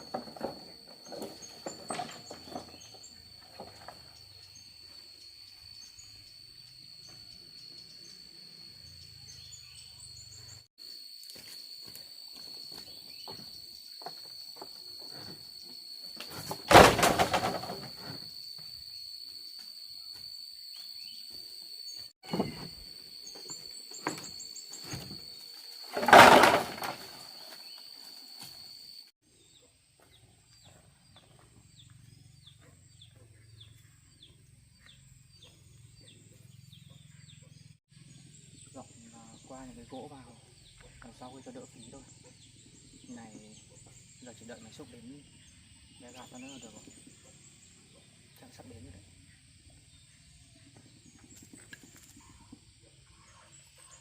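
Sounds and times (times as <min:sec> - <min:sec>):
wood thrown onto a pile: 0:00.0 - 0:04.2, 0:16.2 - 0:18.3, 0:24.0 - 0:28.6
high insect whine: 0:00.0 - 0:54.0
bird chirping: 0:04.0 - 0:10.7, 0:29.3 - 0:54.0.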